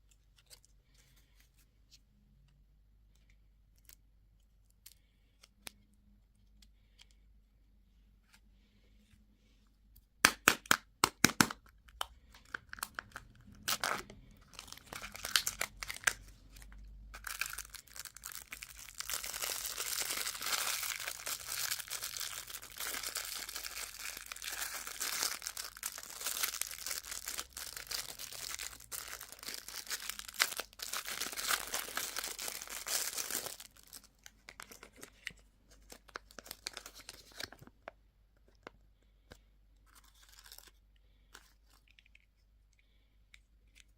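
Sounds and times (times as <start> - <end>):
wrapper crinkling and tearing: 12.4 - 37.8.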